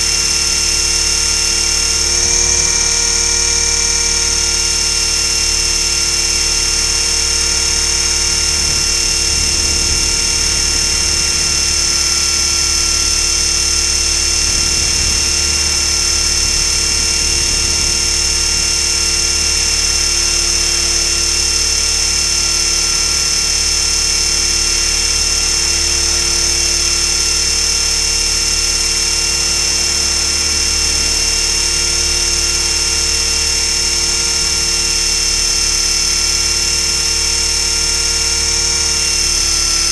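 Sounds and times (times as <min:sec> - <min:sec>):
rc helicopter motor whine: 0:00.0 - 0:39.9
rotor noise: 0:00.0 - 0:39.9.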